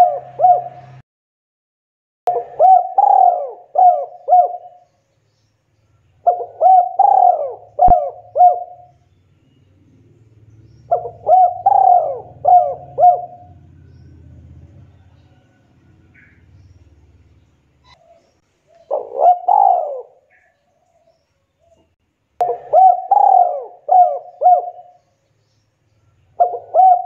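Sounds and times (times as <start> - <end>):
dove cooing: 0.0 - 1.0, 2.3 - 4.9, 6.2 - 9.0, 10.9 - 16.6, 17.8 - 21.8, 22.4 - 25.1, 26.4 - 27.0.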